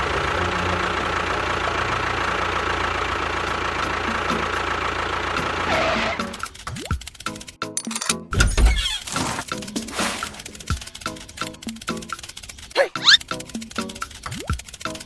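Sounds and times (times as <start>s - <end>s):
small motor running with faint whine: 9.1s - 15.0s.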